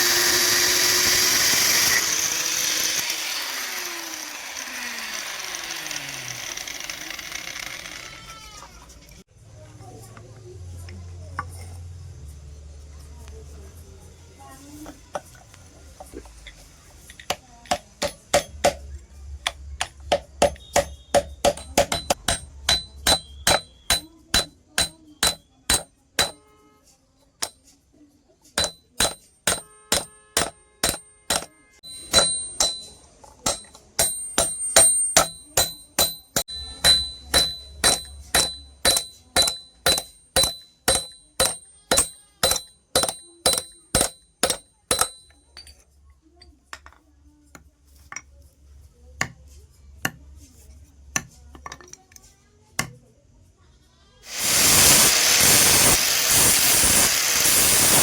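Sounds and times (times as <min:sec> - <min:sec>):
hammer ringing on anvil: 0:17.7 - 0:18.8, 0:20.1 - 0:26.5, 0:28.6 - 0:45.7.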